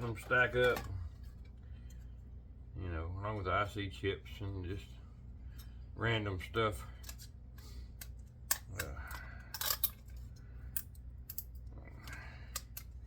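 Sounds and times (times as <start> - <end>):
clinks of small scrap parts: 8.0 - 11.6.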